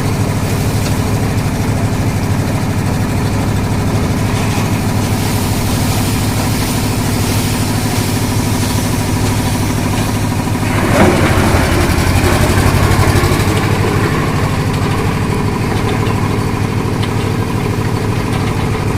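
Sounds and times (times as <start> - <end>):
engine running steadily: 0.0 - 18.9
loud rushing noise: 4.3 - 15.5.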